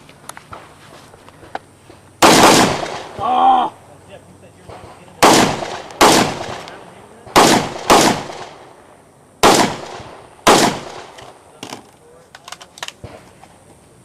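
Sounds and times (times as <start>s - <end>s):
rifle shots with ringing echo: 2.2s - 3.2s, 4.6s - 11.5s.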